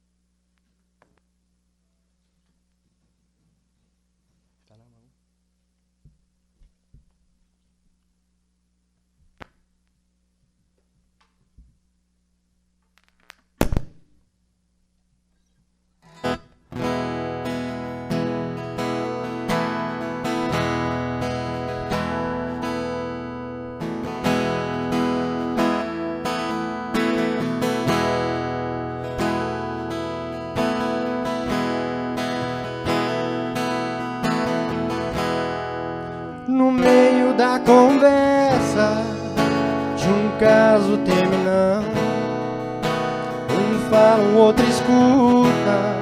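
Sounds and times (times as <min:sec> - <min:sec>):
sharp knock: 0:13.6 - 0:14.1
acoustic guitar strummed: 0:16.1 - 0:46.0.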